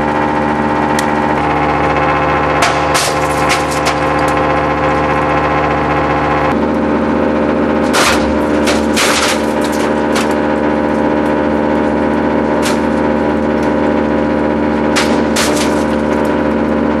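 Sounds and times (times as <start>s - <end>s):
plastics grinder humming: 0.0s - 17.0s
plastic pieces snapping in grinder: 2.5s - 4.4s, 7.8s - 11.4s, 12.1s - 13.8s, 14.7s - 16.7s.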